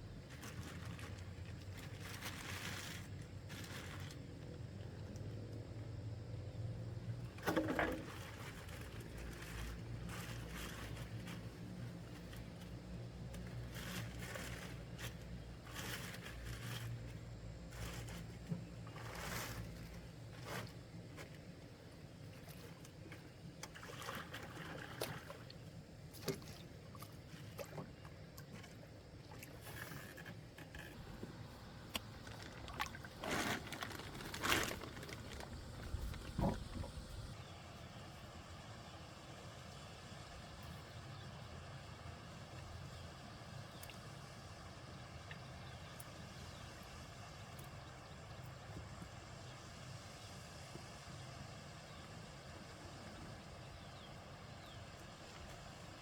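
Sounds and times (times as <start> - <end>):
water splashing around a boat: 17.7 - 38.4.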